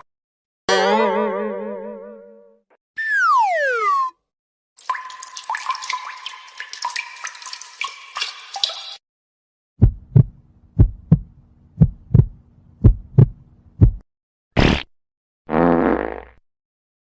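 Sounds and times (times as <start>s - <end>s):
heartbeat thumps: 9.8s - 14.0s.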